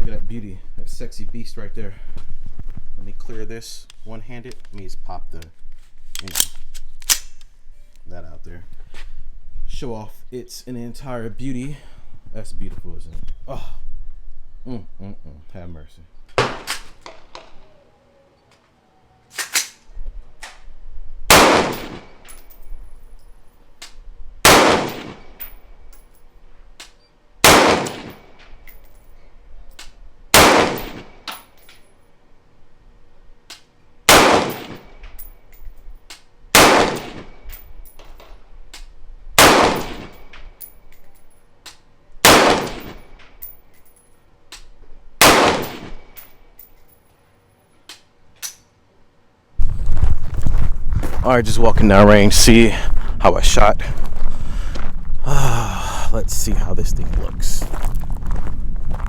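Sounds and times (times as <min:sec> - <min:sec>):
rifle shots with ringing echo: 0:21.3 - 0:22.4, 0:24.4 - 0:25.5, 0:27.4 - 0:28.4, 0:30.3 - 0:31.2, 0:34.1 - 0:35.0, 0:36.5 - 0:37.5, 0:39.4 - 0:40.4, 0:42.2 - 0:43.2, 0:45.2 - 0:46.2.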